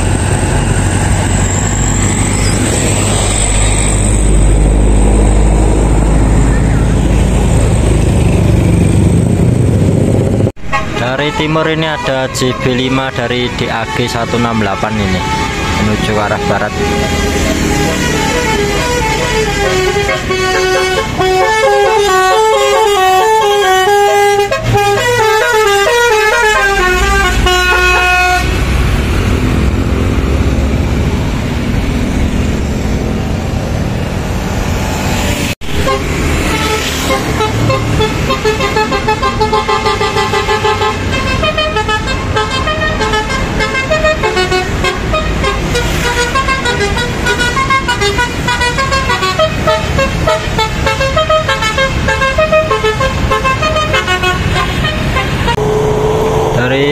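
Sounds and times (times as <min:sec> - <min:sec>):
bus engine running: 0:00.0 - 0:11.0, 0:15.2 - 0:56.9
musical air horn melody: 0:10.6 - 0:28.6, 0:35.6 - 0:56.9.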